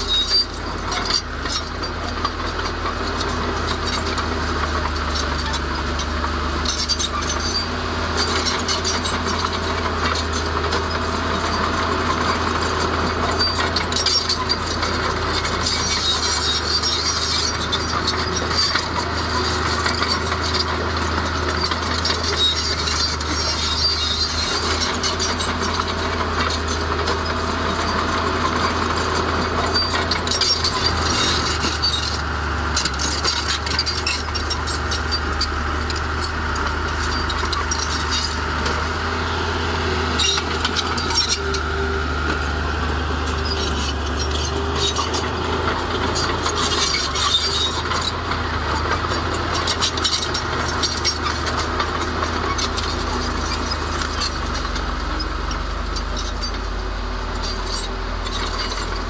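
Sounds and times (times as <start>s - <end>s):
heavy diesel machinery running: 0.0s - 59.0s
clanking of metal and stone: 13.3s - 39.1s, 40.2s - 56.8s.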